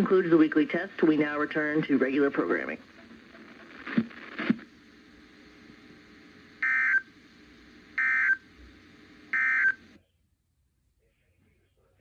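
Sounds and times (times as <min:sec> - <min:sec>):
faint radio hiss: 0:00.0 - 0:12.0.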